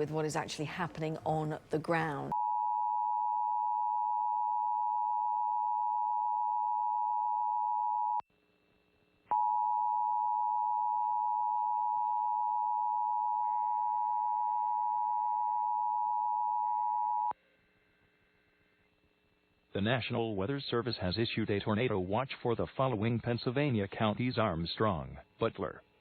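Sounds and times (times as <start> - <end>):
two-tone alarm: 2.3 - 8.2, 9.3 - 17.4.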